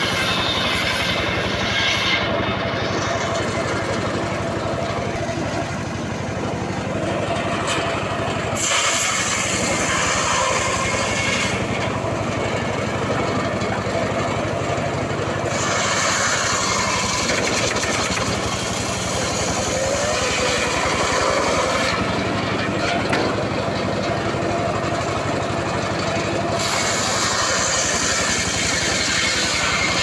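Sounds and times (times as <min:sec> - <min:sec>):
saw cutting log hiss: 0:00.0 - 0:04.9, 0:08.5 - 0:12.0, 0:15.4 - 0:22.1, 0:26.4 - 0:30.0
engine-driven saw running: 0:00.0 - 0:30.0.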